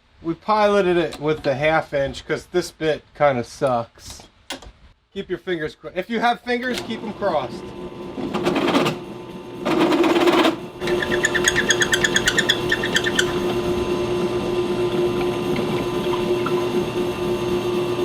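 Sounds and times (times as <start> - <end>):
drill bit chatter: 10.8 - 14.5
electric drill boring through steel: 10.8 - 15.0.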